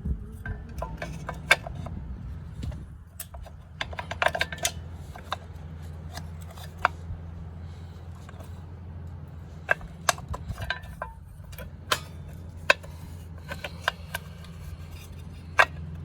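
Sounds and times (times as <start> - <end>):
steady low hum: 0.0 - 16.0
tools and metal parts clinking: 0.4 - 8.7, 9.3 - 16.0.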